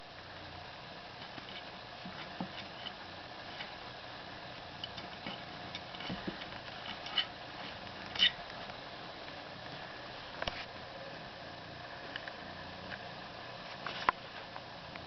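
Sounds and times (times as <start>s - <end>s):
faint steady hiss: 0.0s - 15.0s
kitten tapping and scuffling toy: 1.2s - 3.0s, 4.9s - 8.4s.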